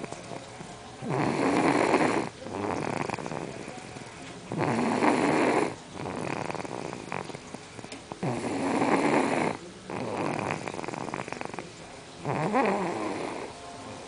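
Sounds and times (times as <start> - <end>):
girl snoring: 1.0 - 3.6, 4.5 - 7.4, 8.2 - 11.6, 12.2 - 13.5.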